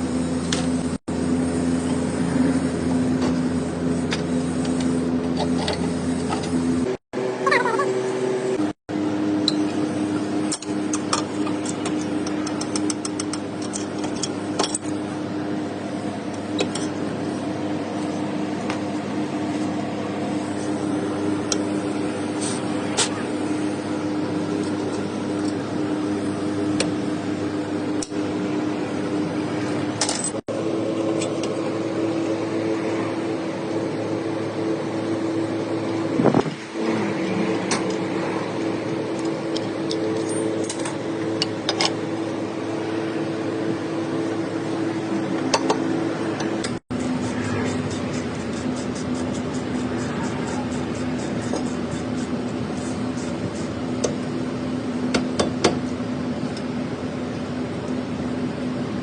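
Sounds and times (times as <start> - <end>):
vehicle mechanical hum: 0.0 - 59.0.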